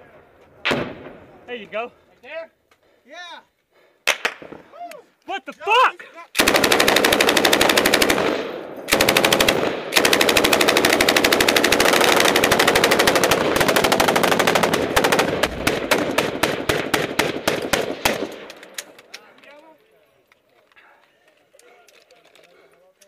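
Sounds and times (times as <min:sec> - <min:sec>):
machine guns firing bursts: 0:06.4 - 0:18.6.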